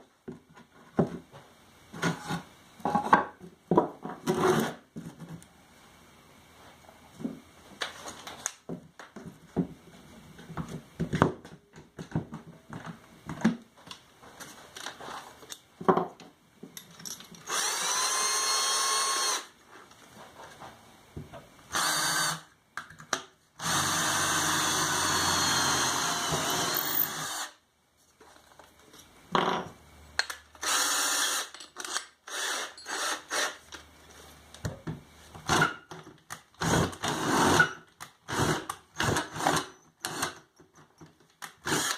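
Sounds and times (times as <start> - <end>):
electric drill whining: 17.5 - 19.5, 21.7 - 22.5, 23.6 - 27.6, 30.6 - 33.6, 41.6 - 41.9.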